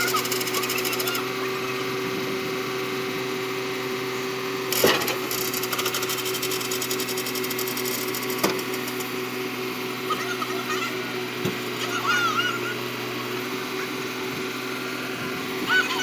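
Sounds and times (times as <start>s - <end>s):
fast rattling clicks: 0.0s - 1.2s, 4.7s - 9.2s
mechanical hum: 0.0s - 16.0s.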